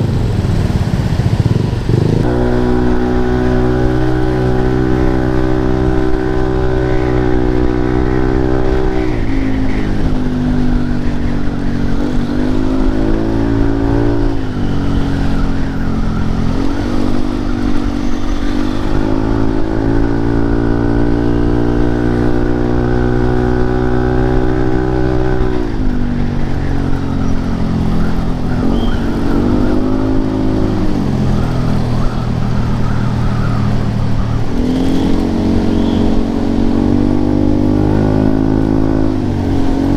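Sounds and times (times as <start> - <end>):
scooter engine revving: 0.0 - 39.9.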